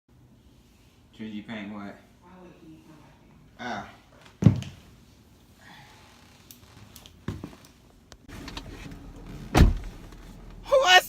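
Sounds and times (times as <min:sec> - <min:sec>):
low steady rumble: 0:08.2 - 0:10.8.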